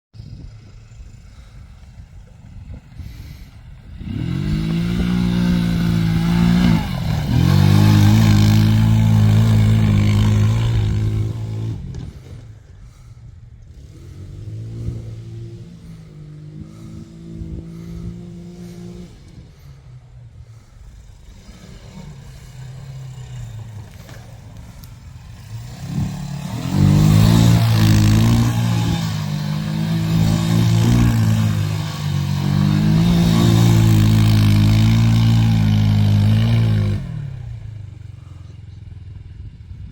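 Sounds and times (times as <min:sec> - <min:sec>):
atv engine revving: 0:00.2 - 0:39.9.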